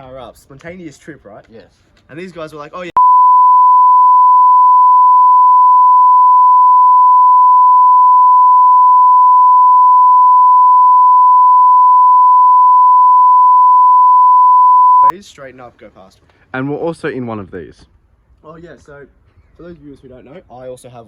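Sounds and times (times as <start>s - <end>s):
loud pure tone bleep: 3.0s - 15.1s.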